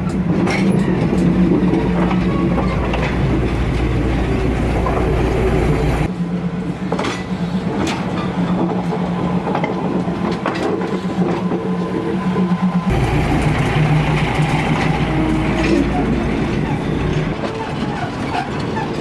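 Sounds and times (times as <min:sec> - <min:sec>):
diesel train engine hum: 0:00.0 - 0:18.2
train wheels clicking over rails: 0:12.9 - 0:19.0.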